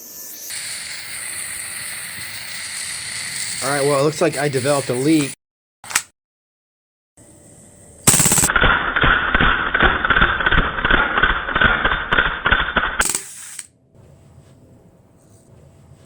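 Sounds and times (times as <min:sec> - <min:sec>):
bb pistol firing rapidly: 0:08.1 - 0:13.7.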